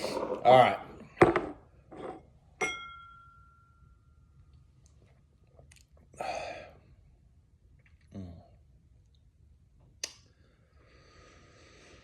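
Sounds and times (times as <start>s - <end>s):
glass struck ringing: 2.6s - 4.1s.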